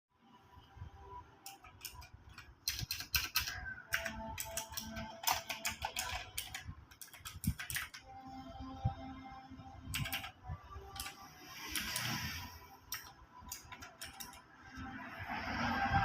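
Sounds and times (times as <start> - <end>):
mechanical keyboard typing: 1.4 - 8.1, 9.9 - 12.2, 12.9 - 14.4.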